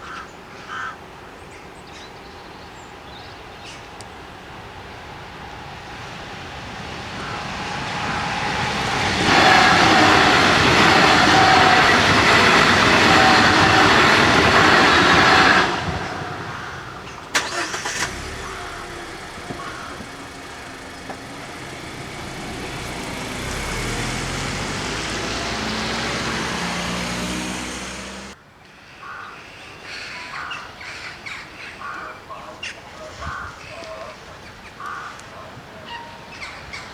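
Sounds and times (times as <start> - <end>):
train passing rumble: 2.9 - 28.4
vehicle engine pulling away: 5.3 - 16.7, 17.3 - 28.4.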